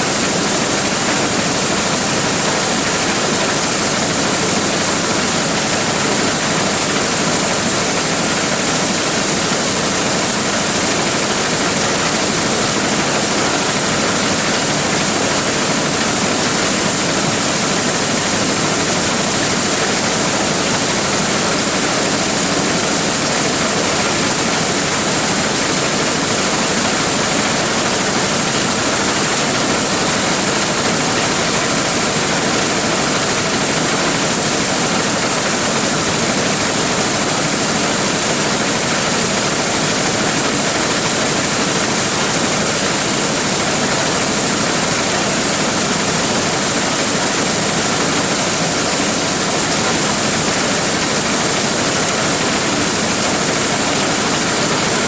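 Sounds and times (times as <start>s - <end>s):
corn sheller running: 0.0s - 55.0s.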